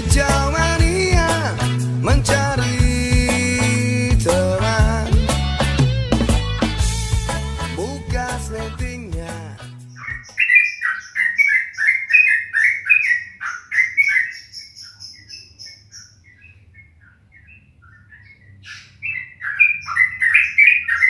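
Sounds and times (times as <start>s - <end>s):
songbird chirping: 5.8s - 21.0s.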